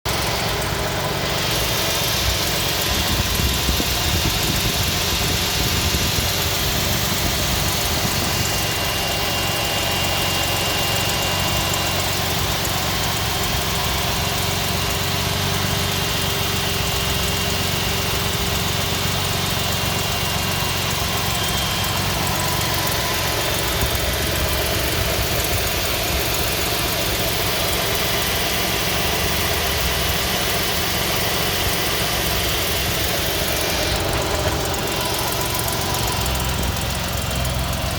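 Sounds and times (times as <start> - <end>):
car engine running: 0.0 - 37.9.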